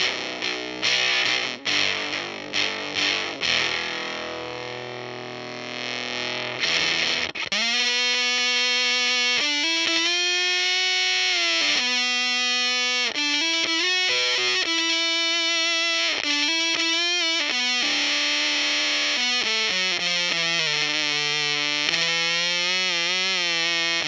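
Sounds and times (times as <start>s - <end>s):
fuzzed electric guitar: 0.0s - 24.0s.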